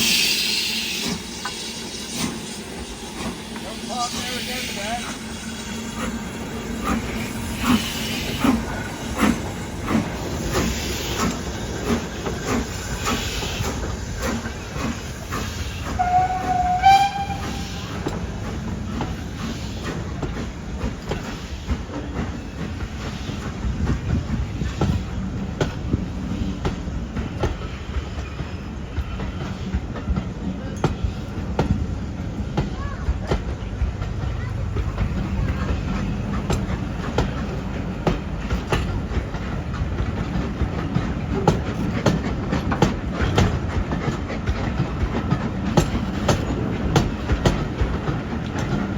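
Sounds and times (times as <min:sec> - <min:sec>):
steam locomotive exhaust beats: 0:00.0 - 0:48.9
train rumble with wheel clicks: 0:00.0 - 0:48.9
steam locomotive whistle: 0:15.8 - 0:18.2.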